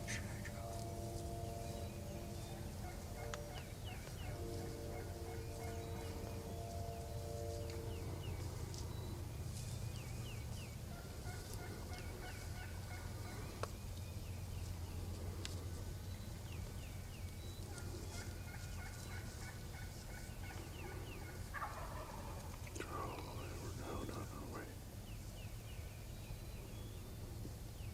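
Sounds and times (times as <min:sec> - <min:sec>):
steady low rumble: 0:00.0 - 0:27.9
turkey gobbling: 0:02.5 - 0:06.4, 0:10.9 - 0:13.7, 0:17.6 - 0:24.1.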